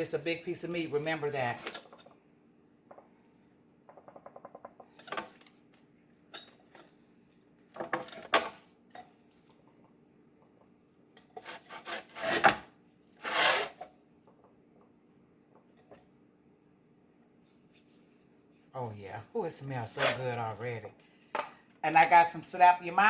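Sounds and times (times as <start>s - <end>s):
spice containers scraping: 11.3s - 13.9s, 17.5s - 20.8s
hands rubbing meat: 17.4s - 18.8s.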